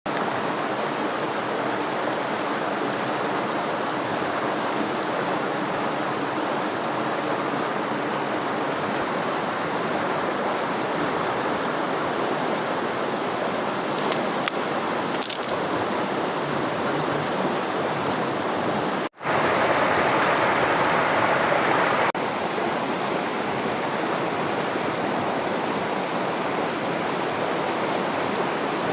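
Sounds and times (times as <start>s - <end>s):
waterfall rushing: 15.9s - 28.9s.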